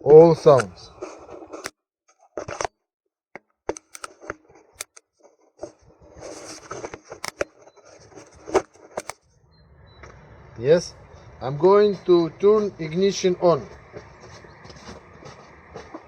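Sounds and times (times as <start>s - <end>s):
handling clicks and knocks: 0.4s - 1.7s, 3.7s - 5.0s, 6.5s - 9.2s
rustling: 4.0s - 9.3s, 13.6s - 16.0s.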